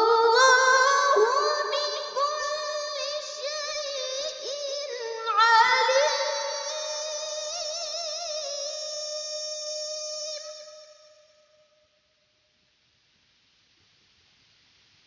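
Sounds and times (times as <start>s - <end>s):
person reciting melodic chant: 0.0s - 11.0s.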